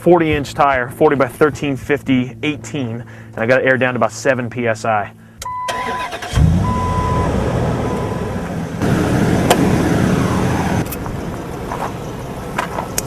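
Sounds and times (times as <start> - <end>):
car engine running: 5.0 - 13.0.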